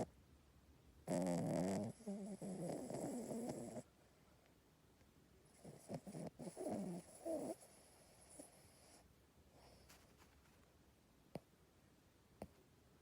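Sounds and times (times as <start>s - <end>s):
dog snoring: 1.0s - 3.9s, 5.5s - 9.0s.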